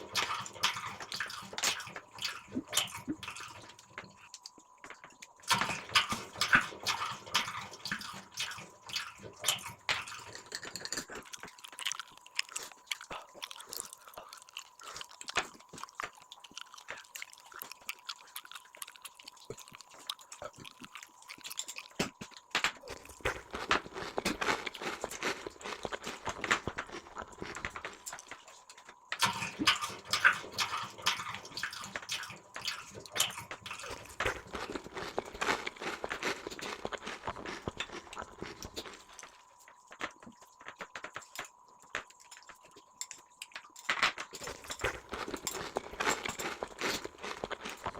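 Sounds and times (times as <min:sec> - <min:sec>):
person chewing food: 0:00.0 - 0:47.9.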